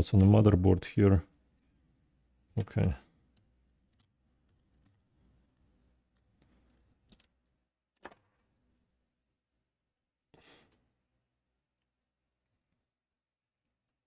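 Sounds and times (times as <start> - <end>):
small parts and tools clicking: 3.3 - 8.5.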